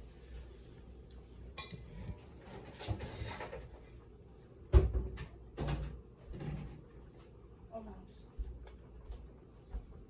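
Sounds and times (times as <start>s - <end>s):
knocks of dishes or cupboard: 4.7s - 6.7s.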